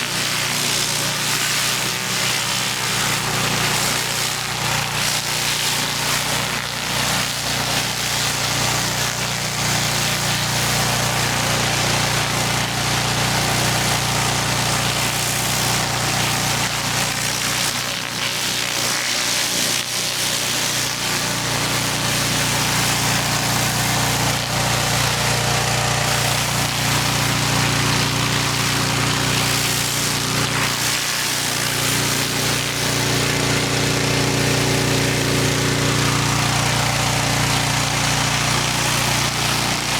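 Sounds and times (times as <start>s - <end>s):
small petrol engine running: 0.0s - 39.9s
water spray hissing on concrete: 0.0s - 39.9s.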